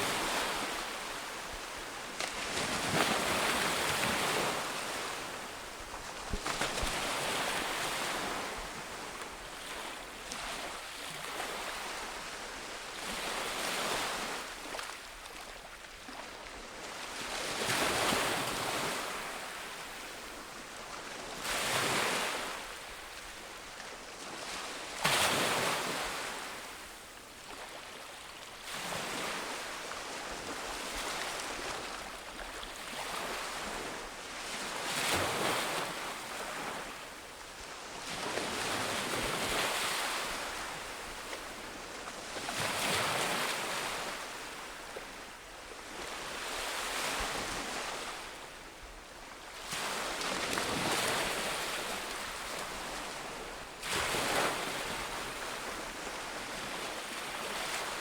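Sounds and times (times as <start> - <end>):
ocean waves breaking on beach: 0.0 - 12.2.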